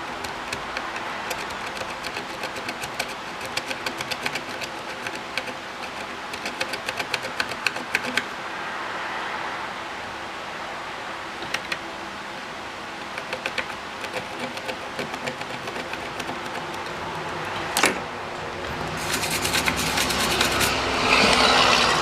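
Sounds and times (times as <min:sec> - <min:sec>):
hand tools clicking and tapping: 0:00.0 - 0:08.3, 0:13.0 - 0:18.0
steady background hum: 0:00.0 - 0:22.0.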